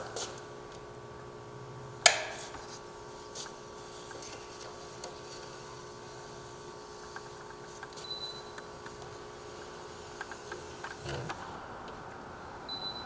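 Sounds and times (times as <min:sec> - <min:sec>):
sharp click: 0:02.1 - 0:02.4.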